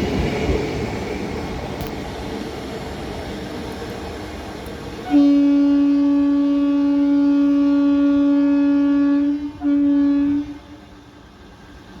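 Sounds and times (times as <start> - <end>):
train horn blasts: 5.0 - 11.0.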